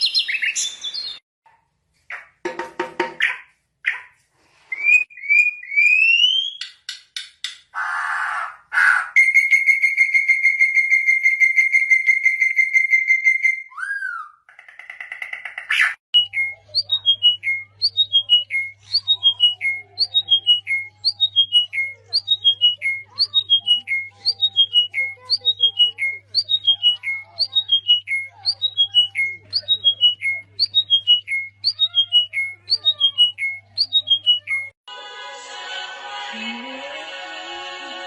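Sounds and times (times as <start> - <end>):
high bird trill: 15.8 - 34.8.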